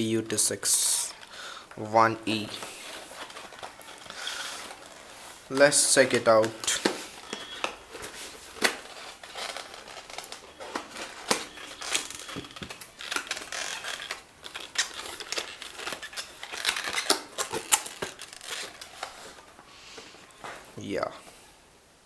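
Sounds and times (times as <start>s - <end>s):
cardboard box rustling: 2.0s - 19.6s.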